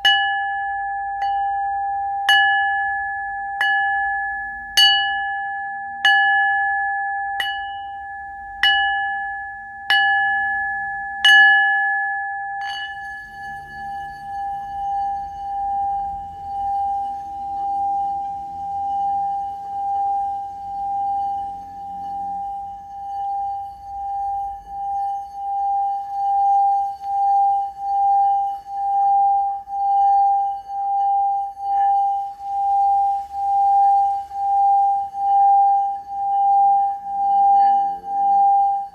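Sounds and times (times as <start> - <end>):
singing bowl ringing: 0.0 - 38.9
singing bowl sustained tone: 0.0 - 38.9.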